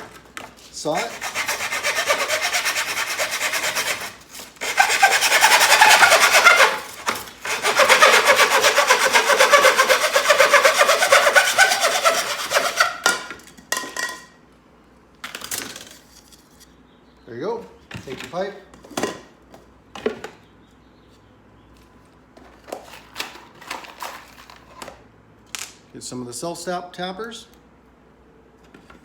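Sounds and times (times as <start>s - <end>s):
saw cutting plastic pipe: 0.8s - 13.3s.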